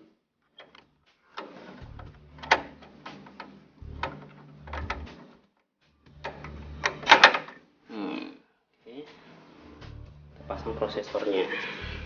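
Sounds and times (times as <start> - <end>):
computer parts clicking and knocking: 1.4 - 5.2, 6.2 - 7.6.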